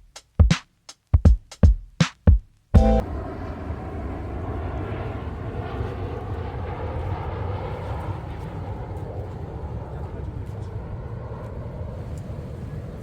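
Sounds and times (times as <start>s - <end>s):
short pitched blip: 2.8s - 3.0s.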